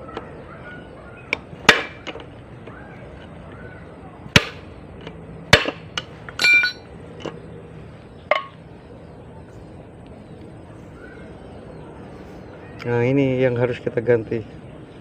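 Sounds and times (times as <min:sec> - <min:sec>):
metal knocks: 0:05.5 - 0:06.9
ringing metallic clink: 0:06.4 - 0:06.9.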